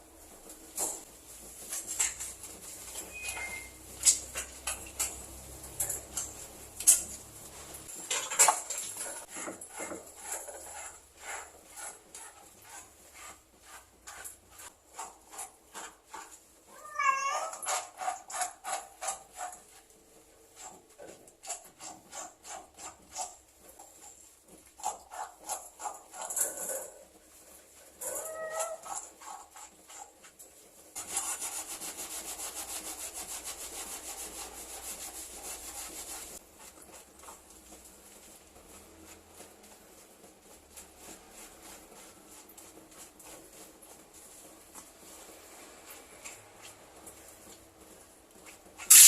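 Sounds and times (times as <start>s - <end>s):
cat meowing: 16.7s - 17.7s, 28.0s - 28.8s
cat yowling: 16.7s - 17.8s, 28.0s - 28.9s.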